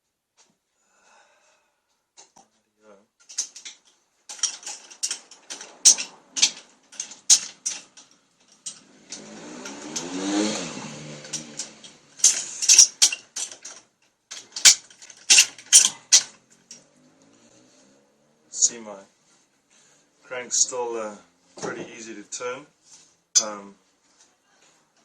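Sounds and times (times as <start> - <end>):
metallic clicks and clinks: 3.2 - 17.5
whir rising and falling: 8.6 - 13.0.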